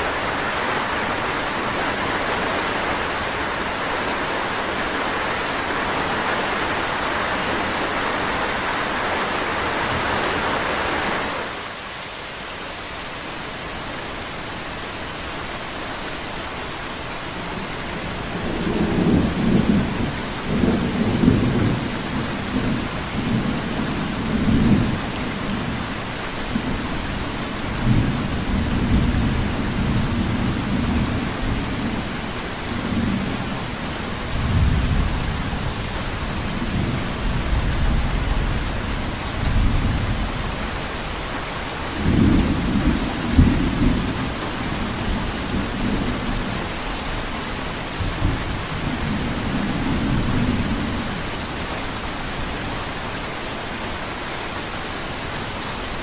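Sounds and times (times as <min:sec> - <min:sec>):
steady rainfall hissing: 0:00.0 - 0:56.0.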